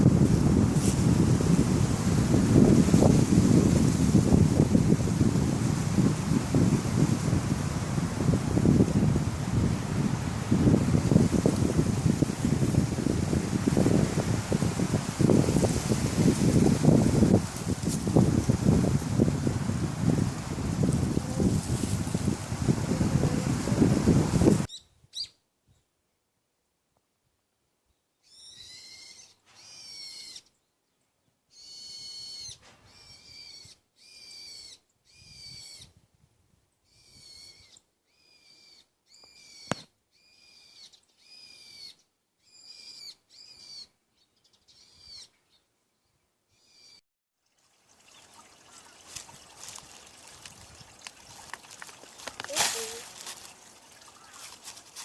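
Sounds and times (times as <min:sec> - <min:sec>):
bird calling: 0:28.2 - 0:30.5, 0:31.5 - 0:35.8, 0:52.3 - 0:53.2.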